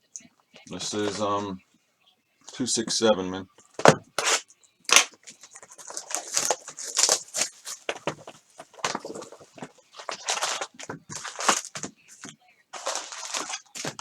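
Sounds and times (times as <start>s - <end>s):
plastic wrapper crinkling and tearing: 4.2s - 14.0s.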